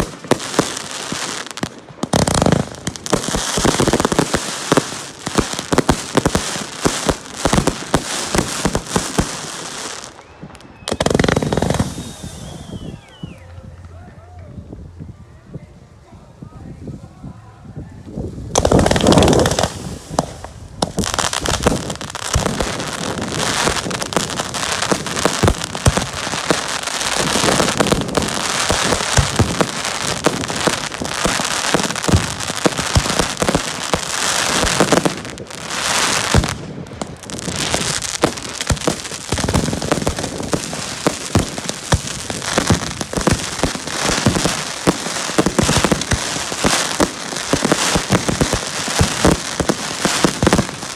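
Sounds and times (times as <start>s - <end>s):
fireworks crackling: 0.0s - 50.9s
loud firework bangs: 10.8s - 13.3s, 18.5s - 50.9s.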